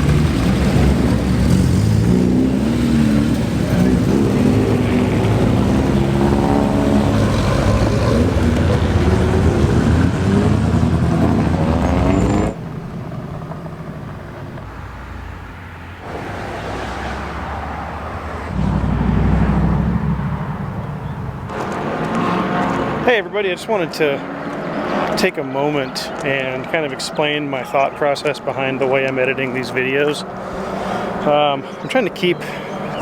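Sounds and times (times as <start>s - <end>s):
car engines running: 0.0s - 33.0s
low rumble: 18.5s - 21.5s.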